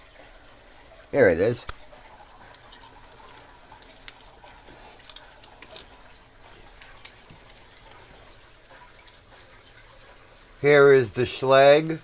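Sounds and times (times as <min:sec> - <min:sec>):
metal padlocks clicking: 0:06.8 - 0:09.2.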